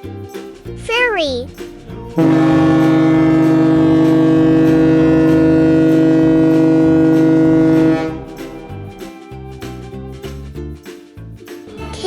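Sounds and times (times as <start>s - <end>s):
ferry horn blast: 2.2s - 8.4s.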